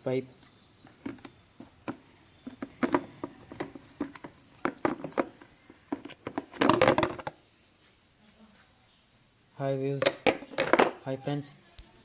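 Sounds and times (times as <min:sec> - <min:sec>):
crickets chirping: 0:00.0 - 0:12.0
plastic parts clicking and knocking: 0:00.8 - 0:07.4, 0:10.0 - 0:11.0.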